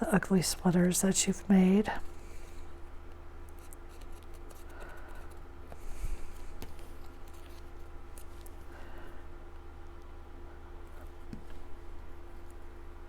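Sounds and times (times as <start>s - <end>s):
steady low hum: 0.0s - 13.0s
paper rustling: 3.5s - 8.7s.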